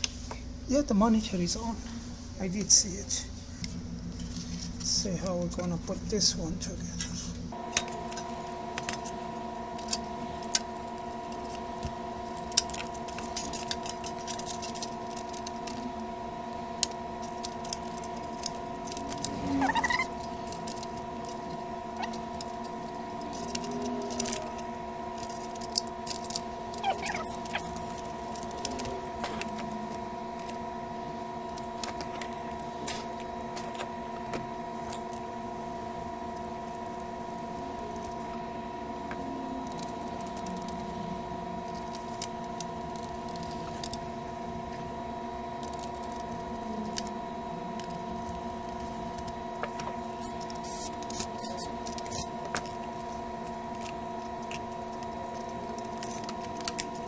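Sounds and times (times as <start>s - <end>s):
steady background hum: 0.0s - 57.0s
short rising squeak: 19.2s - 20.3s.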